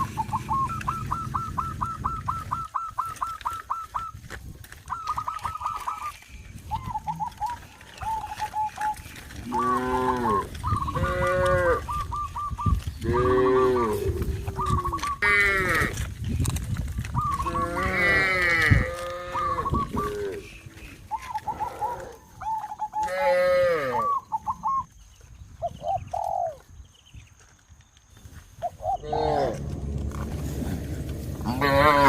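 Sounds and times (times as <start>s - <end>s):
bird chirping rapidly: 0.0s - 4.2s, 11.8s - 13.0s
cattle mooing: 9.4s - 11.9s, 29.0s - 32.0s.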